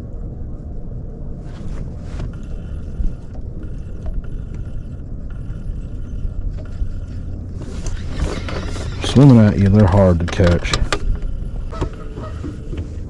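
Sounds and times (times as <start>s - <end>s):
low rumble of boat on water: 0.0s - 13.0s
electric trolling motor whine: 2.2s - 13.0s.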